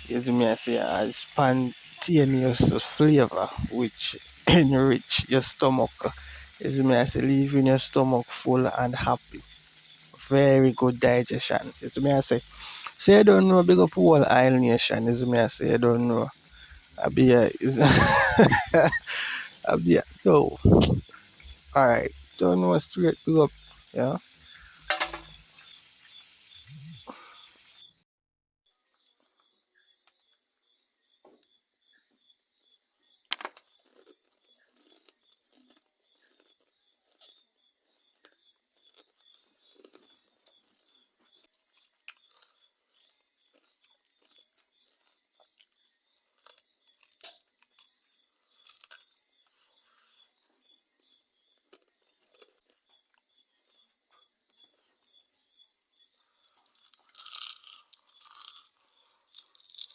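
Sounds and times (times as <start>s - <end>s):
chewing crispy fried chicken: 0.0s - 25.8s, 33.6s - 37.5s, 38.1s - 50.0s, 51.5s - 53.8s, 56.4s - 59.9s
small crackles: 0.0s - 27.9s, 33.3s - 50.3s, 51.5s - 55.0s, 56.3s - 59.9s
insects chirping: 0.0s - 28.0s, 28.7s - 59.9s.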